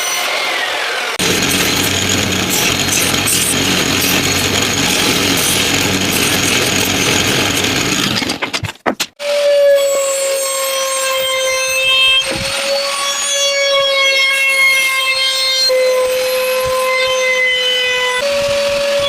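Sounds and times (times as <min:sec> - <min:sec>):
power tool cutting wood: 0:00.0 - 0:08.5
steady pitched tone: 0:01.2 - 0:08.1.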